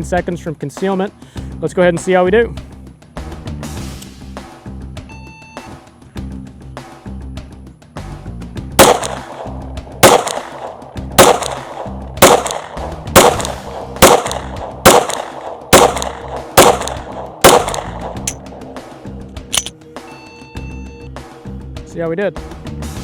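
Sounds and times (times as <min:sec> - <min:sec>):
background music: 0:00.0 - 0:23.0
pistol shots: 0:08.8 - 0:18.4.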